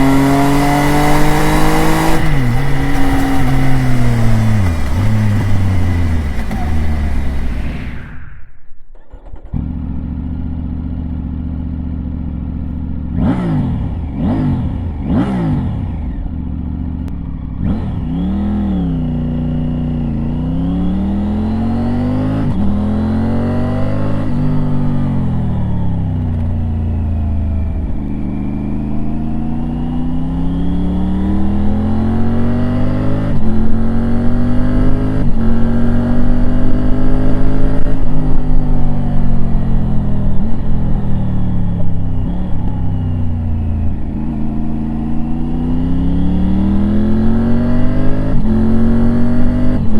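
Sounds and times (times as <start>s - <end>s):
motorcycle throttle blips: 0.0s - 8.2s, 23.8s - 49.9s
motorcycle accelerating through gears: 0.0s - 8.3s, 9.0s - 49.9s
motorcycle engine idling: 0.8s - 8.0s, 9.6s - 13.2s.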